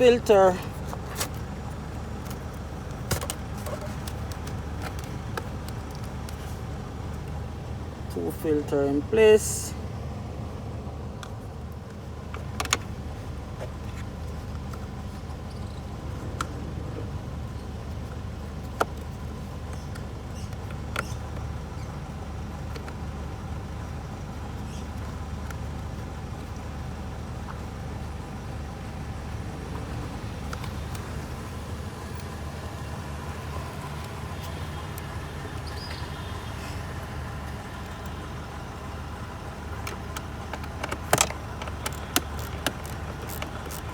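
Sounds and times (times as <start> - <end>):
low mechanical hum: 0.0 - 43.9
sharp clicks and knocks: 2.2 - 6.4, 39.8 - 43.9.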